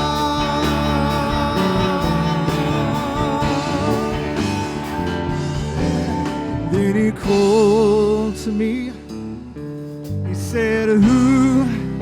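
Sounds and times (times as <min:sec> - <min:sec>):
person singing long note: 0:00.0 - 0:05.1
guitar accompaniment: 0:00.0 - 0:12.0
live worship band playing: 0:00.0 - 0:12.0.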